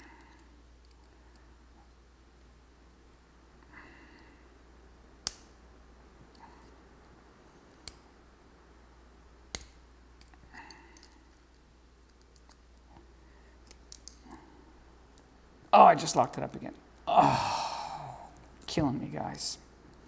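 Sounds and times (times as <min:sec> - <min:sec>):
lock picking metallic clicks: 0:05.2 - 0:05.6, 0:09.5 - 0:12.9, 0:13.6 - 0:14.4.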